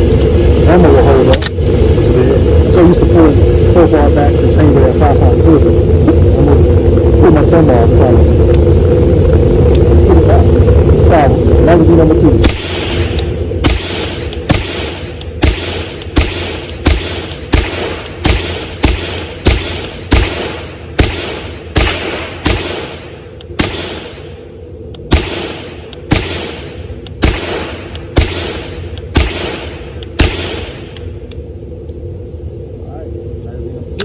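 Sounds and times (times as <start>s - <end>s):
semi-automatic rifle shots: 12.4s - 24.3s, 25.1s - 31.0s.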